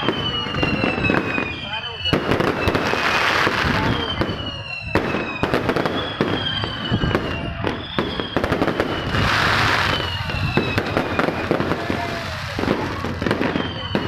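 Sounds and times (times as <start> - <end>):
falling whistling tones: 0.0 - 14.0
fireworks bangs and crackles: 0.0 - 14.0
hissing rush: 8.8 - 13.2.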